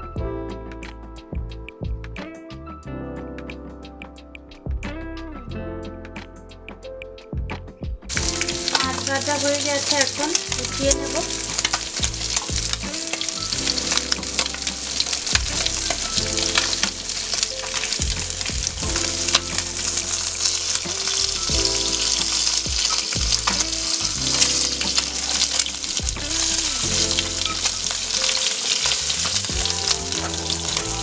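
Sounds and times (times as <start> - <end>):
background music: 0.0 - 31.0
fish sizzling in hot oil: 8.1 - 31.0.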